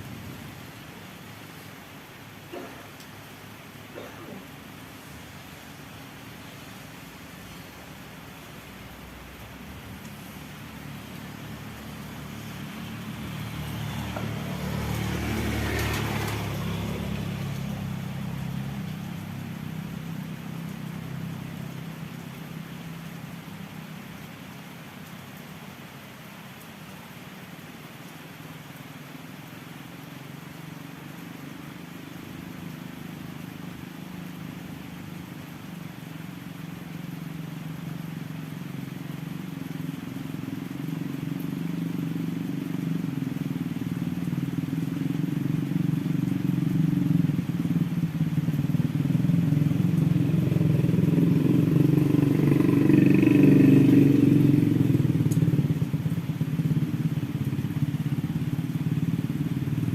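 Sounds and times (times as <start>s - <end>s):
vehicle engine approaching: 8.7s - 22.3s, 37.8s - 59.9s.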